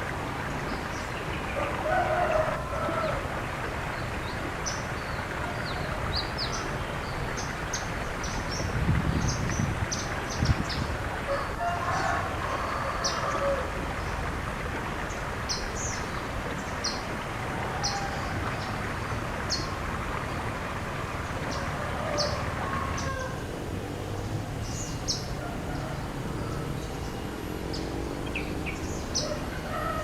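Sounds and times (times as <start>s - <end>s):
rooster crowing: 1.6s - 3.3s, 11.3s - 13.7s, 21.6s - 30.0s
outdoor background hiss: 22.2s - 30.0s
small bird chirping: 24.0s - 30.0s.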